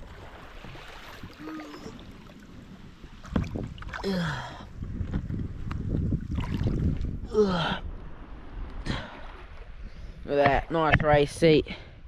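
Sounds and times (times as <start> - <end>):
water sloshing around kayak hull: 0.0 - 7.3
wind buffeting microphone: 0.0 - 12.0
person grunting: 4.0 - 4.6, 7.3 - 7.8.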